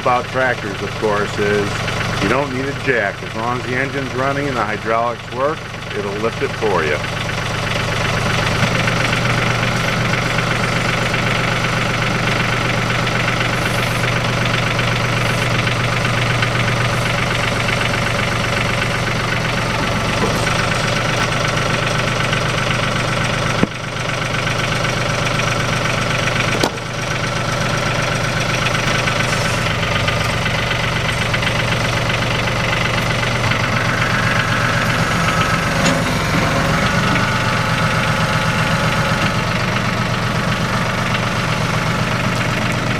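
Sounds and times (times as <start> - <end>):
tractor diesel engine idling: 0.0 - 42.9.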